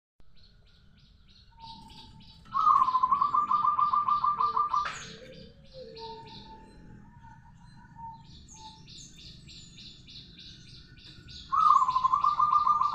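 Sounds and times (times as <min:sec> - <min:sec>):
dove cooing: 0:01.6 - 0:09.3, 0:11.0 - 0:12.9
dove rolling trill: 0:01.6 - 0:12.9.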